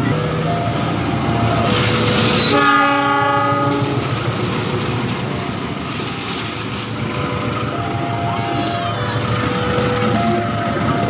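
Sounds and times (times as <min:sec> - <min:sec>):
passing train running noise: 0:00.0 - 0:11.0
train horn blast: 0:02.4 - 0:04.1.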